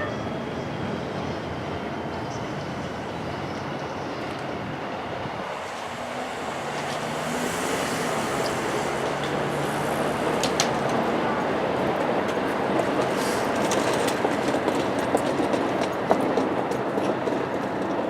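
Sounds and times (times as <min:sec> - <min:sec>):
electric train rumbling past: 0:00.0 - 0:18.0
train wheels clacking: 0:06.6 - 0:18.0.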